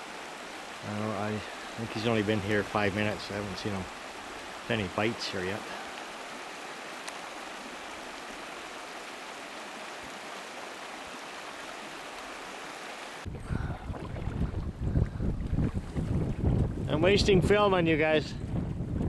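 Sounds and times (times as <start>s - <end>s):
river water rushing: 0.0s - 14.7s
wind buffeting microphone: 13.2s - 19.0s.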